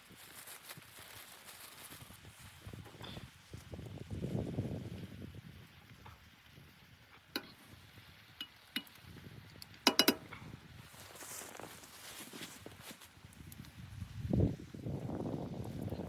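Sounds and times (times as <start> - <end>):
metal dishes clinking: 9.9 - 10.3.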